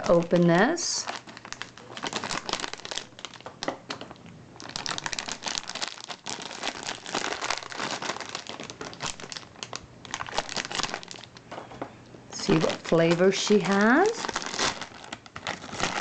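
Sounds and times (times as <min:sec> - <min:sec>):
plastic packaging crinkling: 0:00.0 - 0:11.7, 0:12.4 - 0:16.0.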